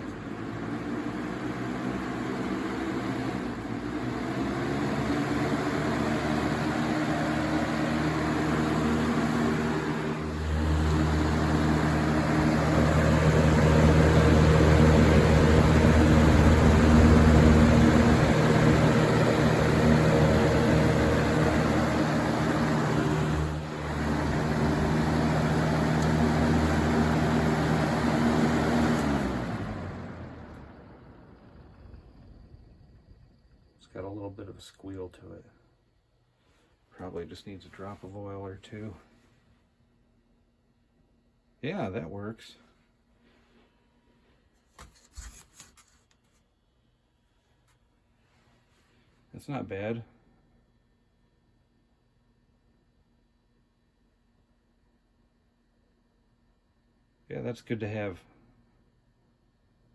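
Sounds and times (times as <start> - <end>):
box fan humming: 0.0 - 35.1
low rumble of air: 30.8 - 33.8.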